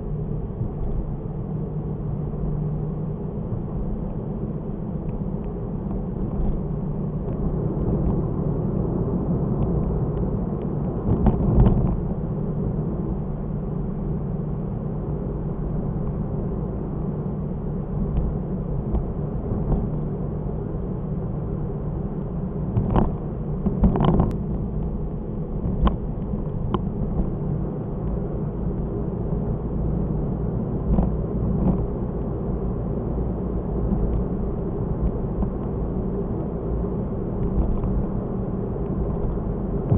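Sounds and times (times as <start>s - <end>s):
car engine and road noise: 0.0s - 39.9s.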